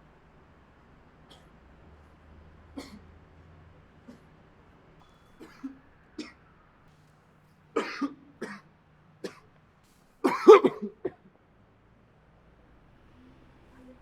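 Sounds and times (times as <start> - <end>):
person coughing: 2.8 - 3.0, 7.8 - 8.6, 10.3 - 11.3.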